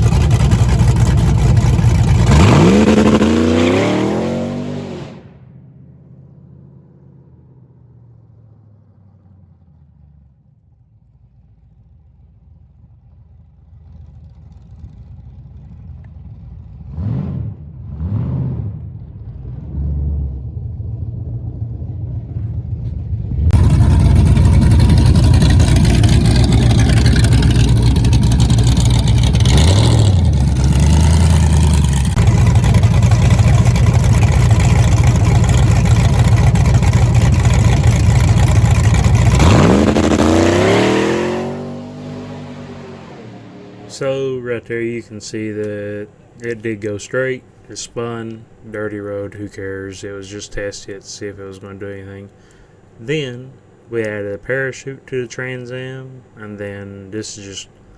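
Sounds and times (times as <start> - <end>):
car engine revving: 0.0 - 10.3, 13.8 - 57.9
car engine full throttle pull: 0.0 - 10.4, 12.8 - 54.2
tires spinning on road: 0.0 - 10.5, 13.5 - 45.6.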